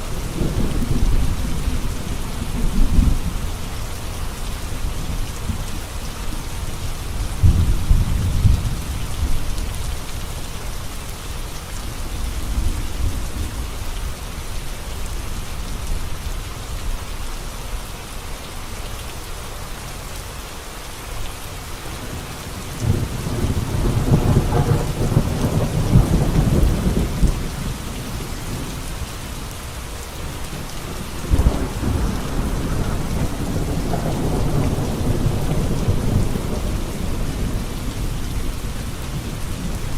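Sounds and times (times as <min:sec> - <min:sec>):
heavy rain on a road: 0:00.0 - 0:39.9
thunder rumbling: 0:00.1 - 0:03.8, 0:07.1 - 0:09.6, 0:21.8 - 0:28.8, 0:30.2 - 0:39.9.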